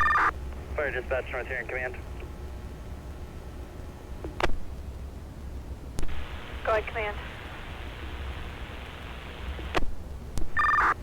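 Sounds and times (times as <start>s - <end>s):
radio scanner static hiss: 0.0s - 5.0s, 6.0s - 11.0s.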